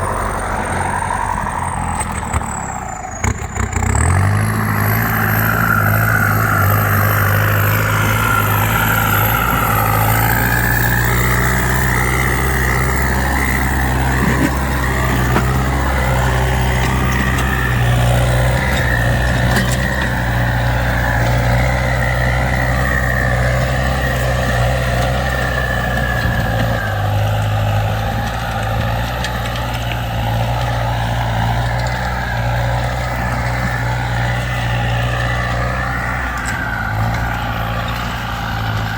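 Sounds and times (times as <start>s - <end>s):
tractor diesel engine under load: 0.0s - 38.9s.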